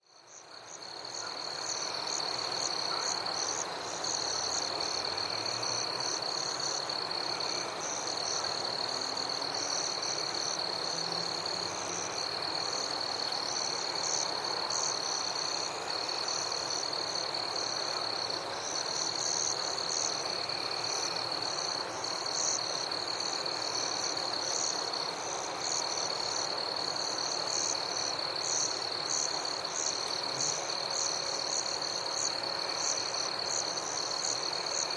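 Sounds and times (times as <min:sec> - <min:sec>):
crickets and night insects chorus: 0:00.0 - 0:34.9
steady high insect trill: 0:00.1 - 0:34.9.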